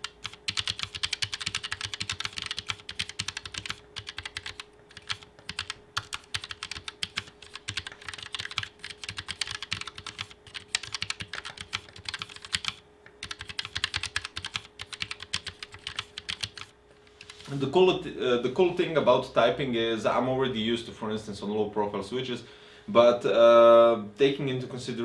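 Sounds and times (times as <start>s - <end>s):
mechanical keyboard typing: 0.0s - 17.4s.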